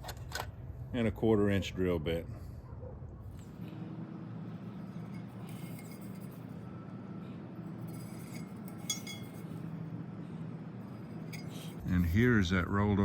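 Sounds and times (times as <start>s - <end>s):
steady low hum: 0.0s - 13.0s
metal utensils clinking: 4.8s - 6.6s, 7.8s - 9.7s, 11.1s - 11.8s.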